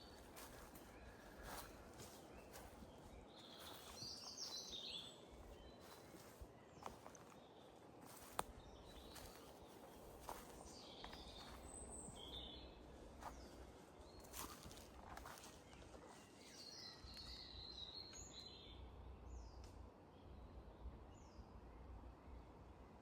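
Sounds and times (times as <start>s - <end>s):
faint high bird chirps: 0.0s - 2.8s, 3.4s - 5.2s.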